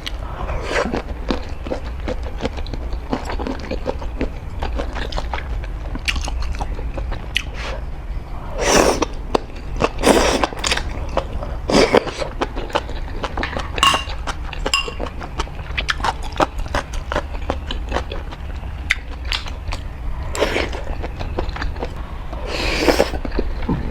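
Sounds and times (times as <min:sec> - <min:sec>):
low hum: 0:00.0 - 0:15.8
chewing with wet mouth clicks: 0:00.8 - 0:07.6, 0:08.7 - 0:22.0
noodle slurping: 0:08.5 - 0:09.2, 0:09.8 - 0:11.0, 0:11.6 - 0:12.4, 0:20.2 - 0:23.2.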